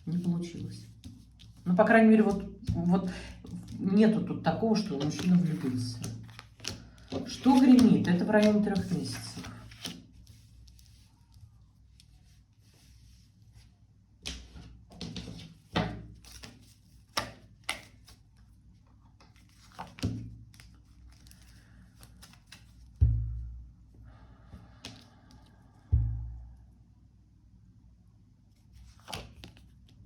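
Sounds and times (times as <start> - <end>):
cards snapping and slapping: 4.8 - 10.1, 14.3 - 18.2, 19.3 - 23.0, 28.9 - 30.0
heavy thud: 23.0 - 23.7, 25.9 - 26.6.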